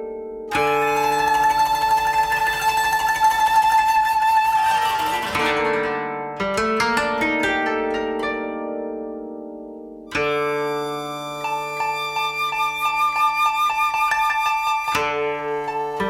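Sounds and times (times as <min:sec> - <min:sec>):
plucked string music: 0:00.0 - 0:16.0.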